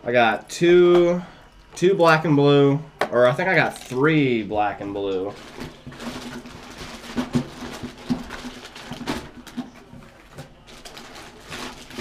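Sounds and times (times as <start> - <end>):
plastic packaging clicking and rustling: 5.0 - 12.0.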